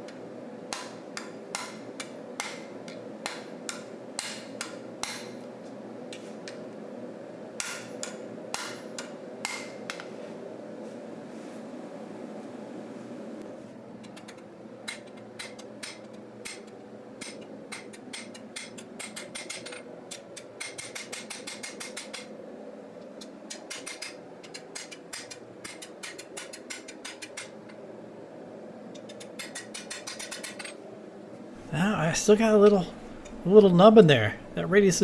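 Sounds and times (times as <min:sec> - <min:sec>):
hammer striking blade on anvil: 0:03.3 - 0:05.4, 0:07.6 - 0:10.0
steady hum: 0:30.0 - 0:35.0.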